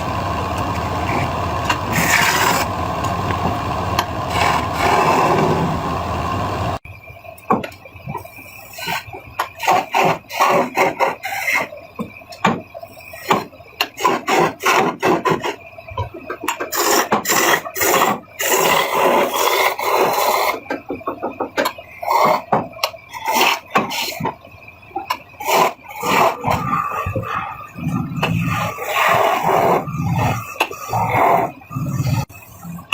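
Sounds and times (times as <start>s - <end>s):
lathe tool scraping wood: 0.0s - 6.8s.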